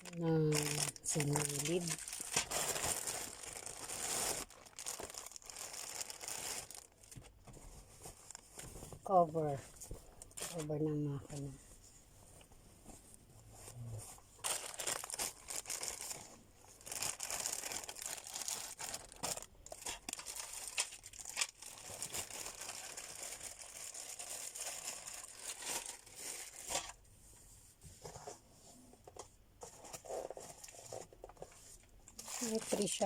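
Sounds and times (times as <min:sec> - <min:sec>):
packaging crinkling and tearing: 0:00.0 - 0:08.8, 0:14.4 - 0:27.0.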